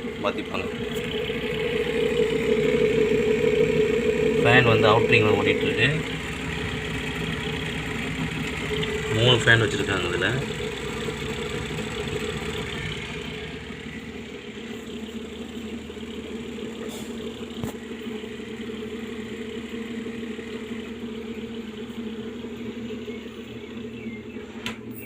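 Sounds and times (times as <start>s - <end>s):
electric fans humming: 0.0s - 15.2s.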